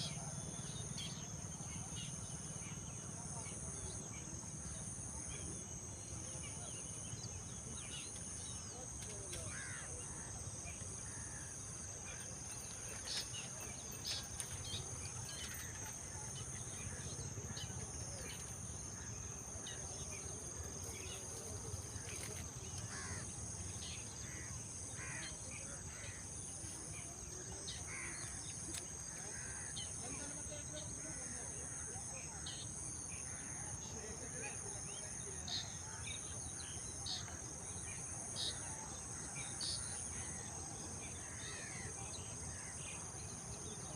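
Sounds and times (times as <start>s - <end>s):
high insect trill: 9.4s - 34.3s.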